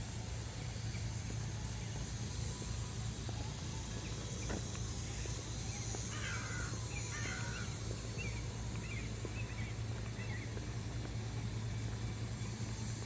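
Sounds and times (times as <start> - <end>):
steady low hum: 0.0 - 13.0
crow calling: 6.1 - 10.4.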